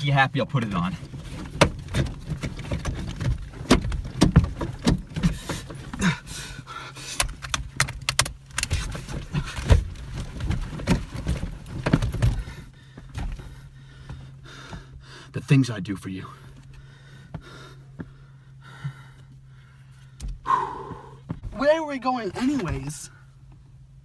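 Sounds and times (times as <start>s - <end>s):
steady low hum: 0.0s - 24.0s
seat belt buckle clicking and rattling: 0.6s - 13.7s.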